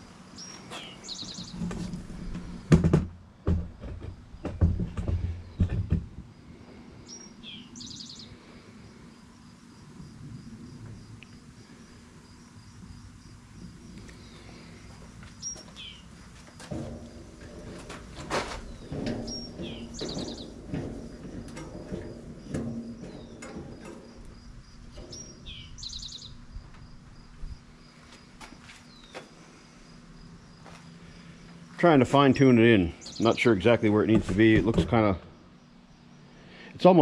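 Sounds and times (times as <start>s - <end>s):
low knocks and rattling: 1.4s - 6.8s, 12.6s - 28.6s, 31.9s - 35.4s
crickets chirping: 6.2s - 33.8s, 35.2s - 36.7s
songbird repeating a phrase: 32.9s - 33.6s.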